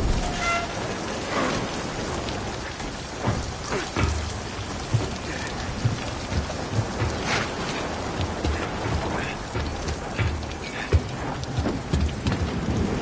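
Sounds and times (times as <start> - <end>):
sharp thunder cracks: 0.0 - 3.7
heavy rain: 0.0 - 13.0
rumbling thunder: 0.0 - 13.0.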